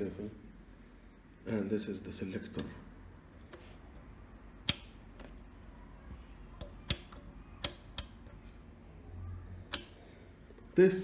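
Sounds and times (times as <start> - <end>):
rotary switch clicking: 2.5 - 2.8, 3.4 - 5.6, 6.5 - 8.6, 9.6 - 10.2.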